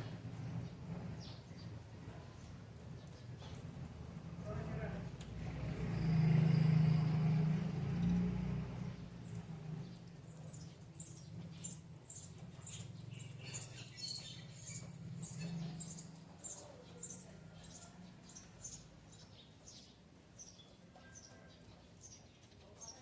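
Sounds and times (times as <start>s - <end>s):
small birds chirping: 9.2s - 23.0s.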